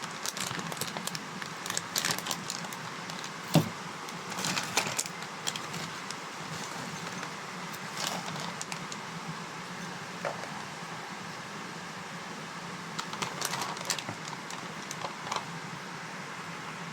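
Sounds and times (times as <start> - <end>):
corn chips being crunched: 0.0 - 9.0, 13.0 - 15.5.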